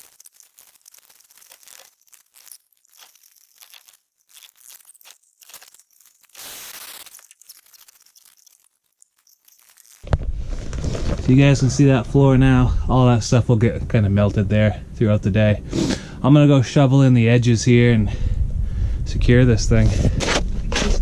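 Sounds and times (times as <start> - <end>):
foam tiles scraping and crinkling: 0.0 - 11.4.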